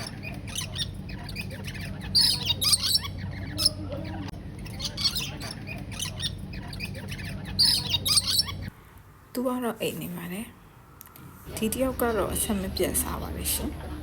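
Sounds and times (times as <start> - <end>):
birds chattering and squawking: 0.0 - 8.8.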